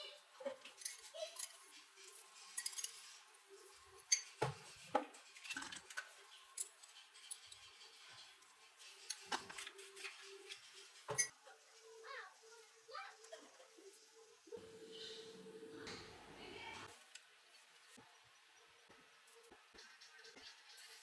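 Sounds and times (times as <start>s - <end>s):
small objects clicking and clinking: 0.6s - 3.2s.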